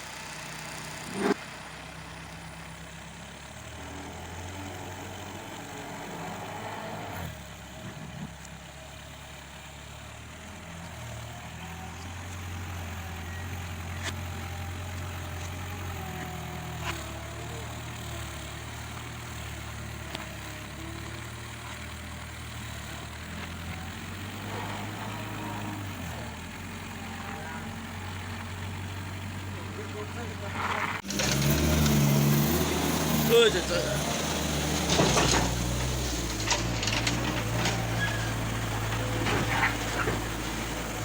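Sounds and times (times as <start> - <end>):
diesel engine running: 0.0 - 41.0.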